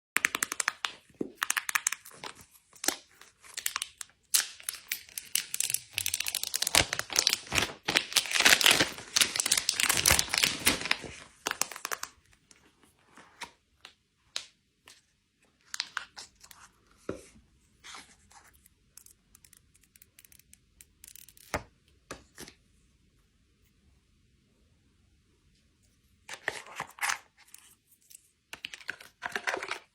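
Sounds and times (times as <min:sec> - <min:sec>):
packaging being torn and crinkled: 0:01.5 - 0:12.2.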